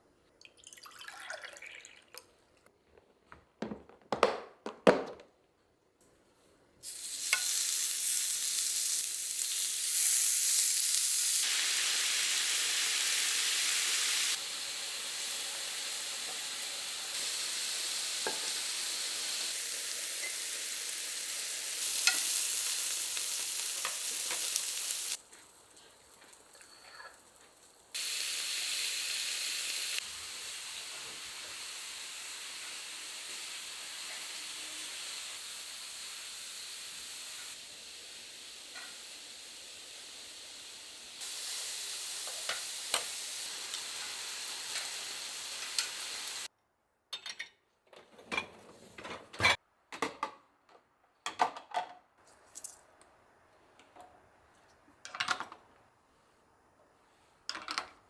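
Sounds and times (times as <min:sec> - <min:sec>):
food sizzling in a frying pan: 0:06.8 - 0:46.5.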